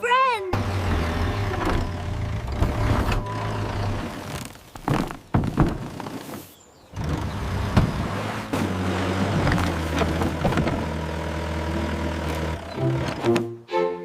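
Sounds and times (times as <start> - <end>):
thunks: 0.6 - 6.4, 7.0 - 11.0
cartoon machine engine humming: 11.5 - 13.4.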